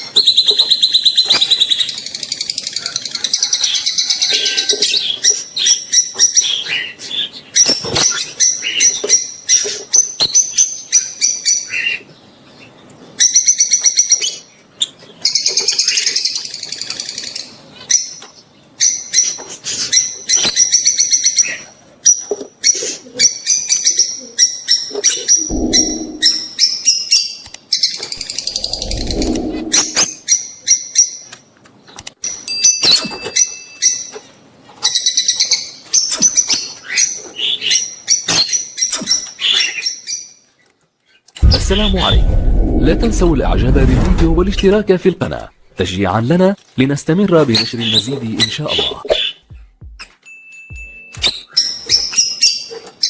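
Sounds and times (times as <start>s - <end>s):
low muffled thuds: 25.5s - 26.4s, 28.2s - 30.0s, 41.4s - 45.7s.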